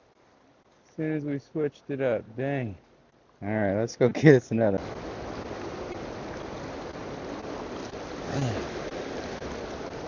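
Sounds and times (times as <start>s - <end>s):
river water rushing: 4.8s - 10.0s.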